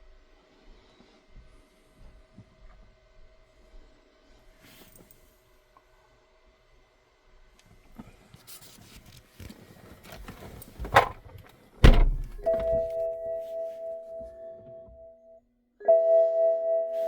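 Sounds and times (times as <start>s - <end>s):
car door shutting: 10.8s - 11.2s, 11.8s - 13.0s.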